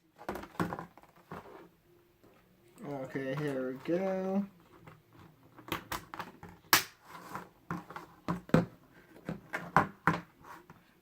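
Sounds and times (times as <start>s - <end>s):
plastic parts clicking and knocking: 0.1s - 1.4s, 4.8s - 7.0s.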